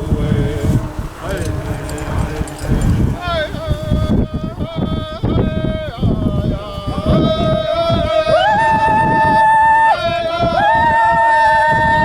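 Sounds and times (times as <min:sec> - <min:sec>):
steady sustained tone: 0:00.0 - 0:05.9
person singing long notes: 0:00.0 - 0:12.0.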